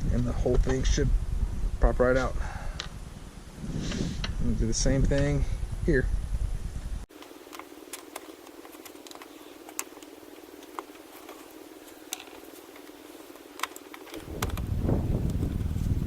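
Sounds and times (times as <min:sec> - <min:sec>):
steady hiss: 0:07.0 - 0:16.0
plastic clips popping out: 0:12.1 - 0:14.7.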